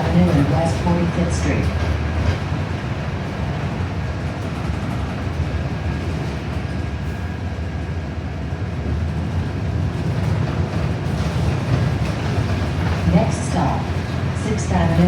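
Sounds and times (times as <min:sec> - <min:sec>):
bus engine low rumble: 0:00.0 - 0:15.0
road noise: 0:11.2 - 0:15.0.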